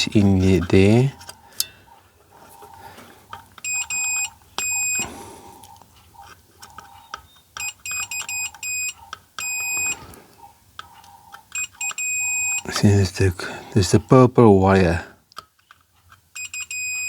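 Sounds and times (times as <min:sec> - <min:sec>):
multimeter beeping: 0:03.3 - 0:12.7, 0:16.3 - 0:17.0.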